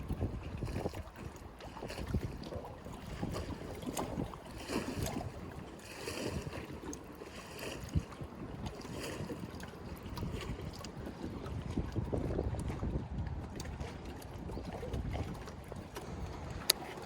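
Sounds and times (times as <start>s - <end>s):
soft water splashes: 0.0s - 17.0s
wind rumbling on microphone: 0.0s - 17.0s.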